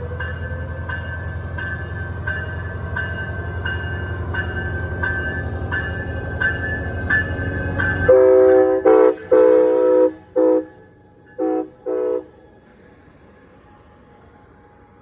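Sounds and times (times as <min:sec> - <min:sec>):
low rumble of passing train: 0:00.0 - 0:15.0
locomotive air horn blasts: 0:08.1 - 0:10.8, 0:11.4 - 0:12.4.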